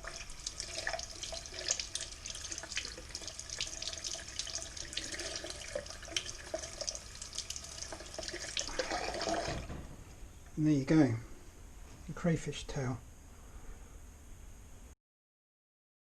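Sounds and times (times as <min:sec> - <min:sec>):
tap water splashing: 0:00.0 - 0:10.0.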